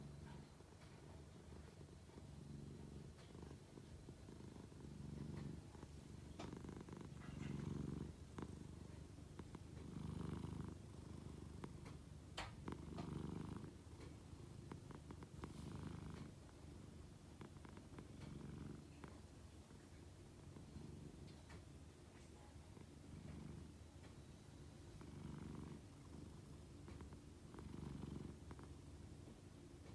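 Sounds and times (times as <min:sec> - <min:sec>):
cat snoring: 0:00.0 - 0:00.6, 0:01.4 - 0:19.2, 0:20.4 - 0:21.2, 0:22.9 - 0:28.8
faint clicks: 0:05.2 - 0:07.7.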